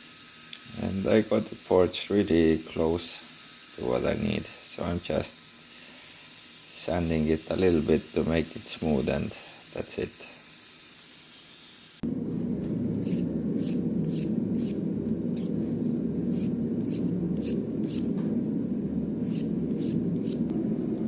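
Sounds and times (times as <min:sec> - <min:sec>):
steady low rush: 0:12.0 - 0:21.0
sanding rasping strokes: 0:13.0 - 0:14.8, 0:16.3 - 0:18.1, 0:19.2 - 0:20.4.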